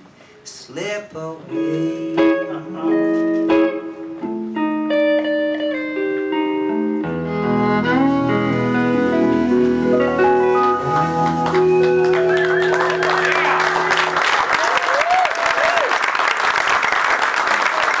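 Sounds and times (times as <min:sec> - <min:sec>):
live band chord ringing: 0:02.1 - 0:14.6
audience whooping: 0:09.0 - 0:18.0
audience applause: 0:10.1 - 0:18.0.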